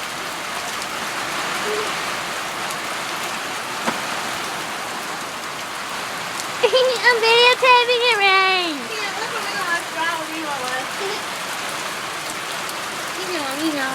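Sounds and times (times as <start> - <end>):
rain falling: 0.0 - 13.9
sharp tap: 3.8 - 4.1.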